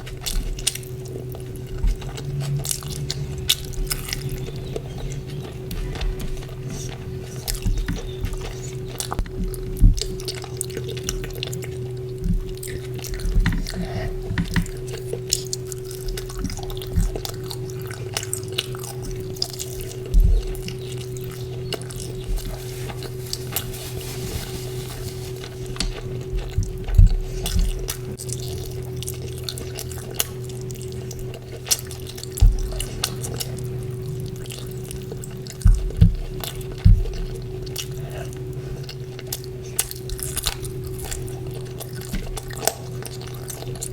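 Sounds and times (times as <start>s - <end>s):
steady low hum: 0.0s - 43.9s
wet chewing and squishing: 0.0s - 43.9s.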